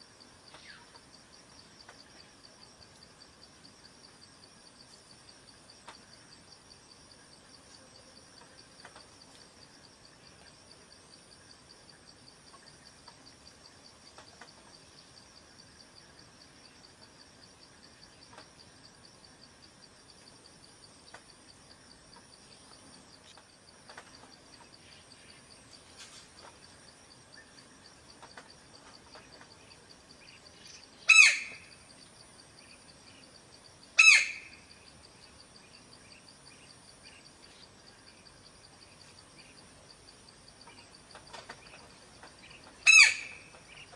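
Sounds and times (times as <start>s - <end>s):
high pulsing insect drone: 0.0s - 43.9s
woodpecker calls: 30.2s - 31.8s, 34.0s - 34.8s, 42.3s - 43.9s.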